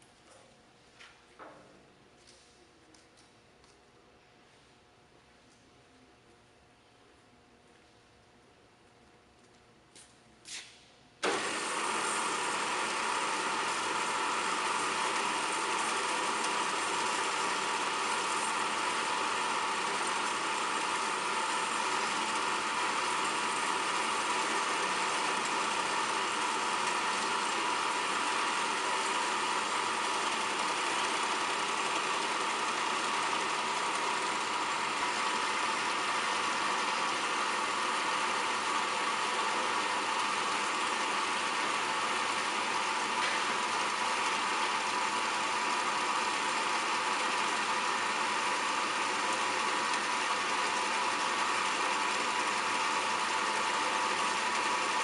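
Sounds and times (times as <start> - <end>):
bandsaw motor humming: 11.2 - 55.0.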